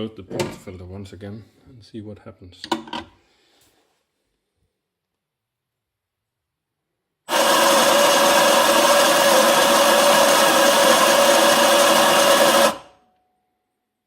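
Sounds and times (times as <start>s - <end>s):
coffee grinder motor grinding: 7.3s - 13.0s.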